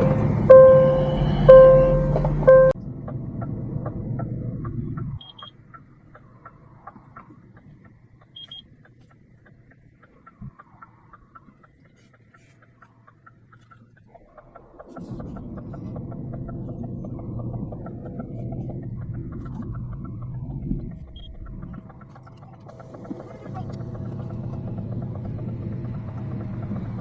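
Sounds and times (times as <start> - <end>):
short high beeps: 0.0 - 2.8
diesel machinery rumbling: 0.0 - 11.8, 13.3 - 27.0
fast ticking: 3.4 - 27.0.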